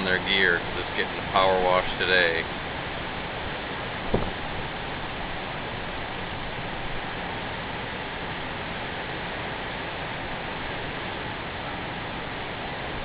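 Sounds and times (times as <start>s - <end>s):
gust thump on microphone: 4.1s - 4.6s.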